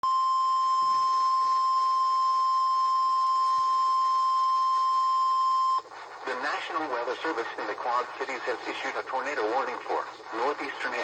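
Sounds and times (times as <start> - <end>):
steady alarm beep tone: 0.0 - 5.8.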